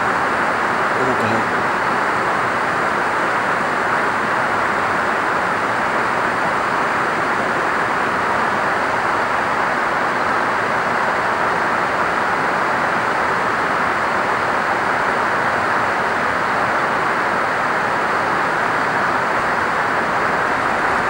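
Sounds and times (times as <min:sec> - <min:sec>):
steady rushing noise: 0:18.9 - 0:21.0.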